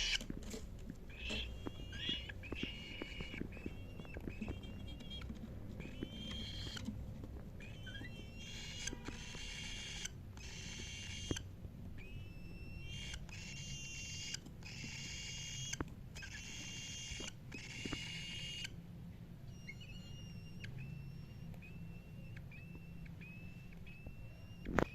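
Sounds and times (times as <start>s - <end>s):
cockatiel calling: 0.0s - 0.3s, 1.0s - 18.8s, 19.4s - 24.9s.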